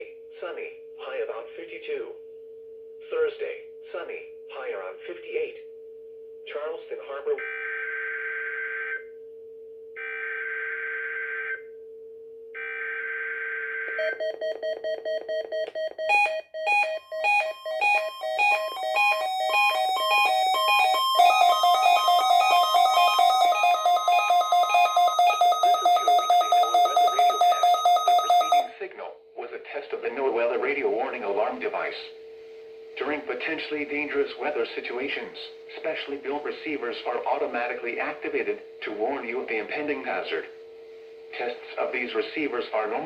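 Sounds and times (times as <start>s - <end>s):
rapid electronic alert beeps: 14.0s - 28.7s
harsh digital data bursts: 17.2s - 28.7s.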